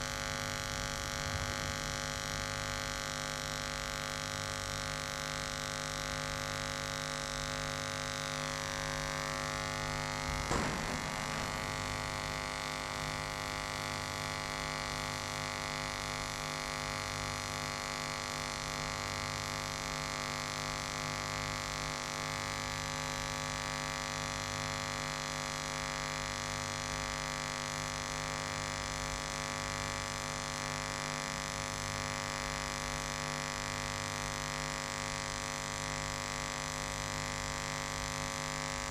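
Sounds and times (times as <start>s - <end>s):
welding arc buzzing: 8.6s - 13.3s
short clack: 10.2s - 13.0s.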